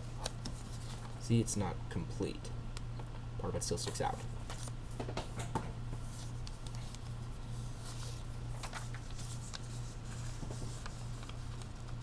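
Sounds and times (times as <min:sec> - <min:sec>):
paper crinkling and rustling: 0:06.0 - 0:12.0.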